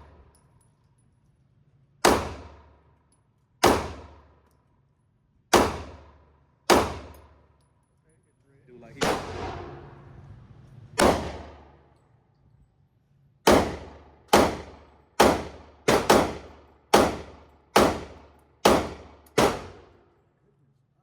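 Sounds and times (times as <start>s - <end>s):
handgun shots echoing indoors: 13.5s - 19.8s.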